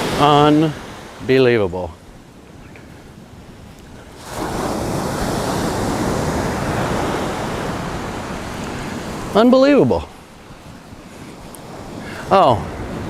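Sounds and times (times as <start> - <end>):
ocean wave breaking: 0.0 - 13.0
rushing wash of surf: 0.0 - 13.0.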